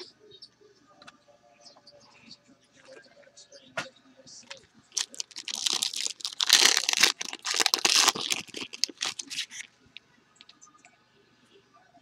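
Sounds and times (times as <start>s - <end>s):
foil wrapper crinkling and tearing: 5.0s - 9.7s.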